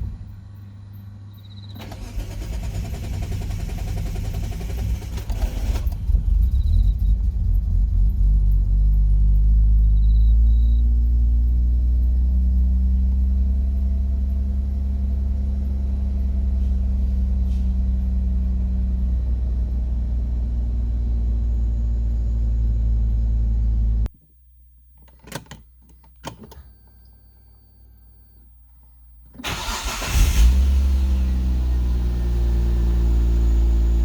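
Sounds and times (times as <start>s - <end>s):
car engine running: 1.9s - 24.1s.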